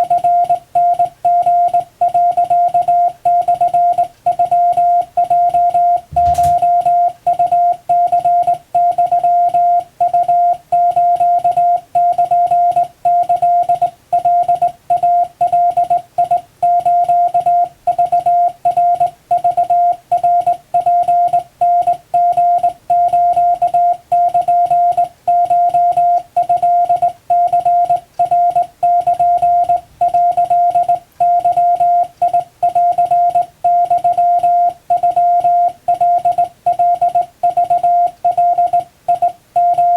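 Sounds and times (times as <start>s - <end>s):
morse code beeps: 0.0s - 39.9s
soft knock: 6.1s - 6.6s.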